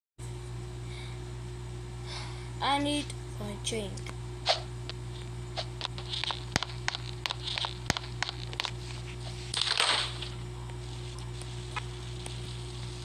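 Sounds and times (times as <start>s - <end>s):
low electrical hum: 0.2s - 13.0s
small objects clicking and tapping: 5.8s - 8.8s.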